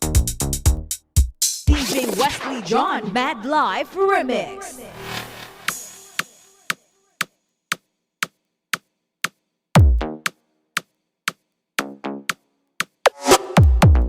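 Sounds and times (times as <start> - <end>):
synth stabs: 1.7 - 6.5
electronic dance music: 1.7 - 6.9.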